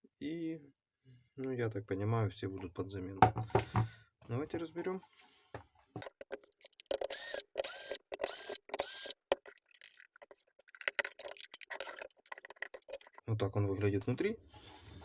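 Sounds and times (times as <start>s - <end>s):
electric screwdriver whining: 6.0s - 13.2s
screws and metal parts clicking: 6.0s - 13.3s.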